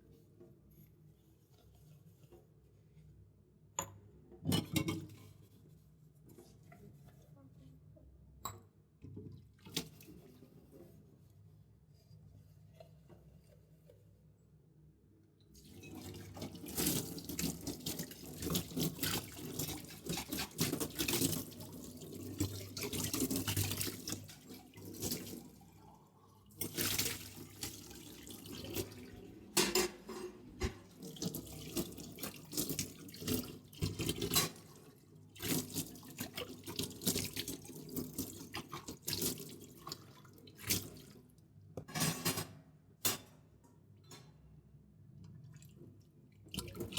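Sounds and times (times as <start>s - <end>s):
tap water running into sink: 15.6s - 25.7s, 26.6s - 40.1s
metal vessels clinking: 29.6s - 30.8s.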